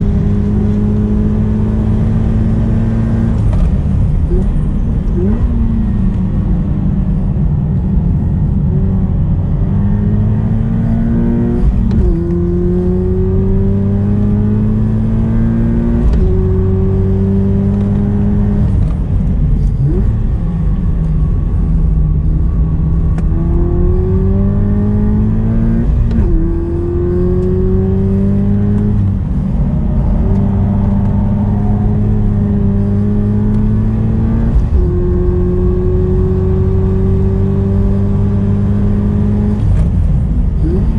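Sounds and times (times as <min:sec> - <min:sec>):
wind and tyre noise: 0:00.0 - 0:40.9
car engine revving hard: 0:09.7 - 0:18.9, 0:23.2 - 0:40.0.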